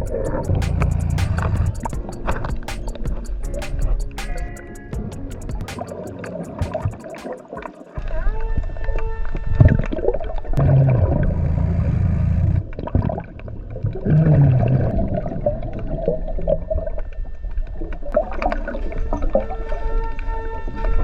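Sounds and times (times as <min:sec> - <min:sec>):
diver exhaling bubbles underwater: 0:10.6 - 0:16.9.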